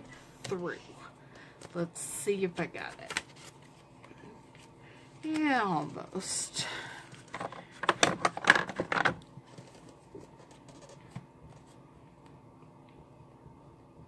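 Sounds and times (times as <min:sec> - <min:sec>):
paper rustling and scraping: 0:07.2 - 0:11.8.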